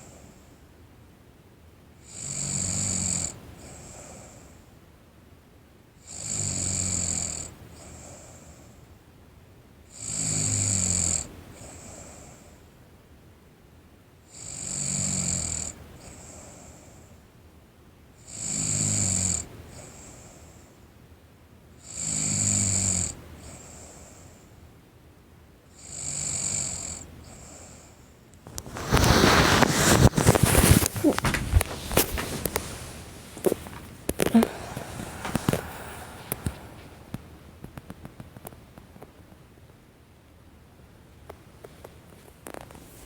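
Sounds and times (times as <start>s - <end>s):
soft breath: 27.3s - 37.8s
person snoring: 29.9s - 37.4s.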